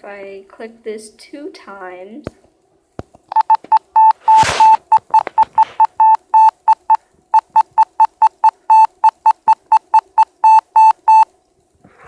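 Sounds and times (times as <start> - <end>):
morse code beeps: 3.3 - 11.3.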